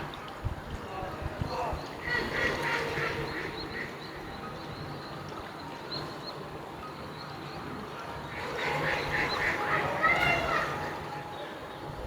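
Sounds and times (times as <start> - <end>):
watery background: 0.0 - 12.0.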